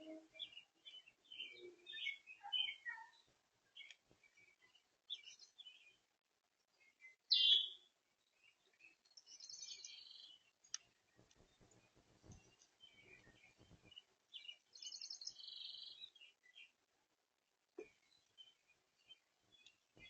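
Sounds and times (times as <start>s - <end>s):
bird trill: 0.0s - 4.0s, 7.3s - 7.9s, 9.2s - 10.4s, 12.3s - 16.7s
songbirds chirping: 0.0s - 20.0s
faint clicking: 3.8s - 4.2s, 10.6s - 14.1s, 19.6s - 20.0s.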